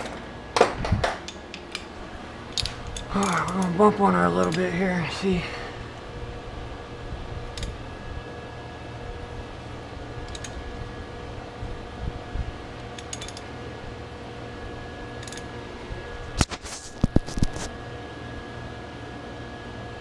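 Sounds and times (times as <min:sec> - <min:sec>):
background hum: 0:00.0 - 0:20.0
sharp metallic click: 0:07.5 - 0:07.8, 0:10.3 - 0:10.6, 0:13.0 - 0:13.5.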